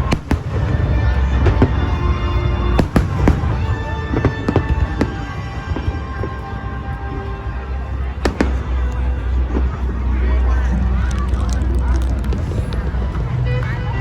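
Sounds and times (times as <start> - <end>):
fireworks bangs: 0.0 - 6.7
deep continuous rumble: 0.0 - 14.0
music playing: 0.0 - 14.0.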